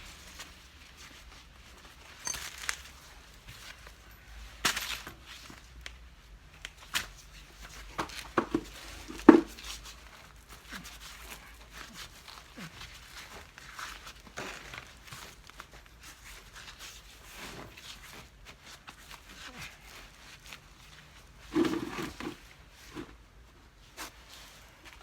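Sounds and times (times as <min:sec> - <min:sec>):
tools clicking and knocking: 0:02.2 - 0:02.8.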